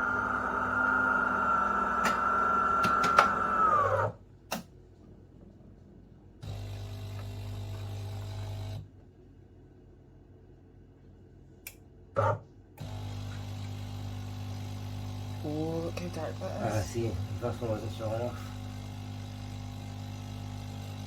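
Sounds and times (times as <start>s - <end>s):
espresso machine pump humming: 6.4s - 8.8s, 12.8s - 21.0s.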